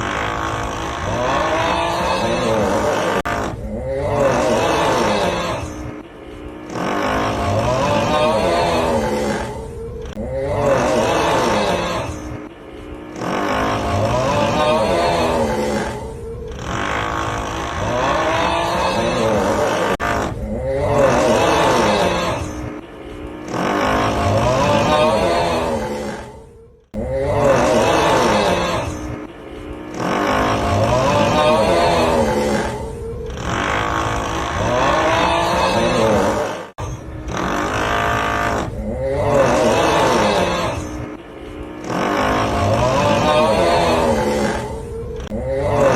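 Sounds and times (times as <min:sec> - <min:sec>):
rough drilling noise: 0:00.0 - 0:26.3, 0:27.4 - 0:45.9
groaning snore voice effect: 0:00.0 - 0:45.9
drill whirring: 0:36.4 - 0:38.8.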